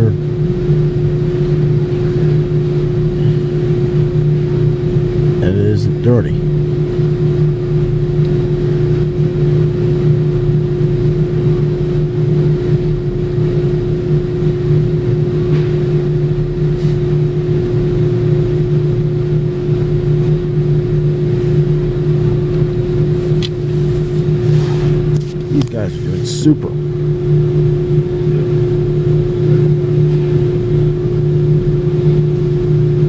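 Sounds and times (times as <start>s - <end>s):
car engine idling: 19.4s - 30.0s.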